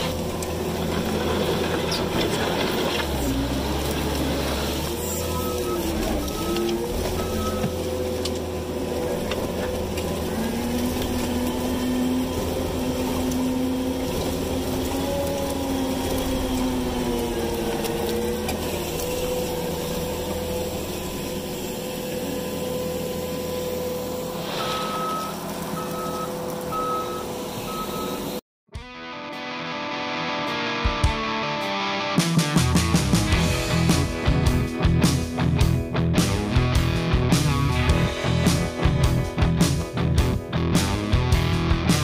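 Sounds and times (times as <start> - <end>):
diesel engine running: 0.0 - 28.4, 32.7 - 42.0
backup alarm beeping: 5.3 - 7.8, 24.5 - 28.4.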